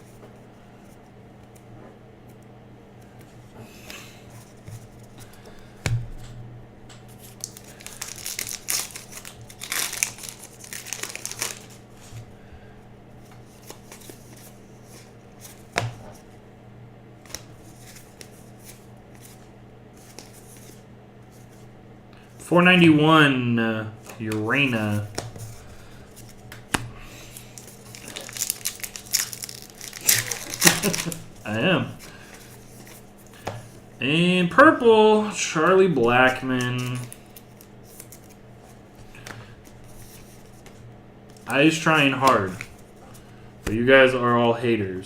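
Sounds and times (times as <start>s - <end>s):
card pack wrappers crinkling: 7.1s - 12.2s, 24.1s - 33.4s, 36.0s - 38.4s, 41.3s - 43.3s.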